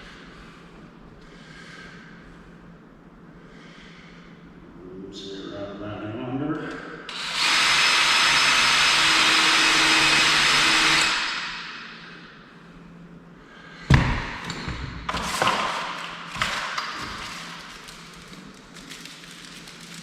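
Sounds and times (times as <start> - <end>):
electric drill running: 7.1 - 11.8.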